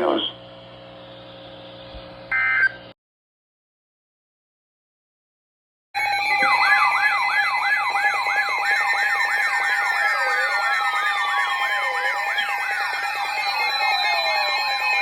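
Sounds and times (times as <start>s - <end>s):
warbling siren alarm tones: 6.0s - 15.0s.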